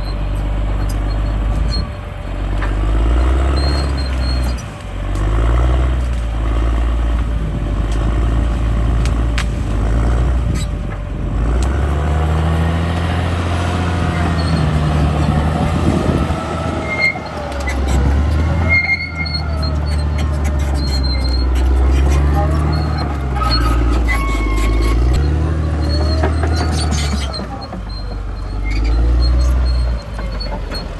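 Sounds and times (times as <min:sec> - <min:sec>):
bulldozer diesel engine running: 0:00.0 - 0:30.9
wavering squeal: 0:13.2 - 0:30.9.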